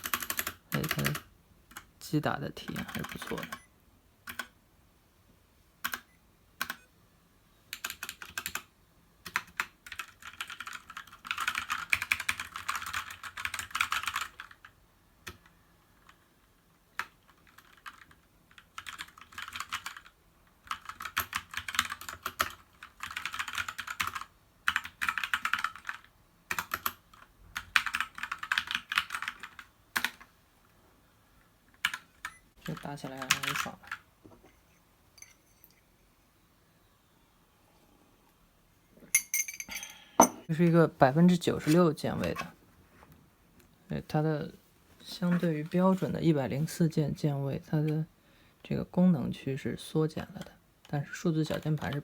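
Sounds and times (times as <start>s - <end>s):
mechanical keyboard typing: 0.0s - 1.9s, 2.6s - 3.7s, 4.3s - 4.6s, 7.7s - 16.2s, 17.0s - 30.2s, 31.8s - 34.0s.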